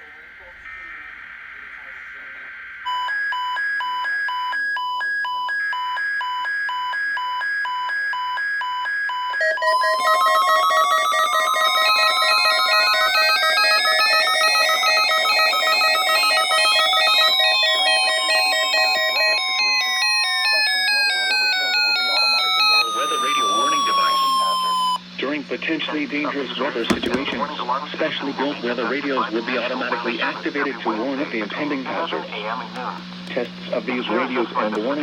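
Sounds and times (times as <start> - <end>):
steady alarm tone: 9.4 - 25.0, 26.8 - 27.5.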